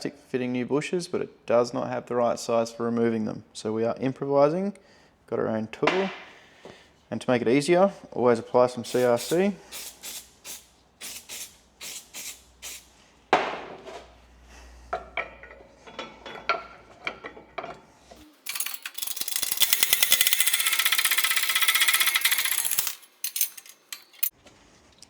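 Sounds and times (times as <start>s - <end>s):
metal tools clinking: 15.2s - 24.3s
impact wrench hammering: 18.2s - 24.3s.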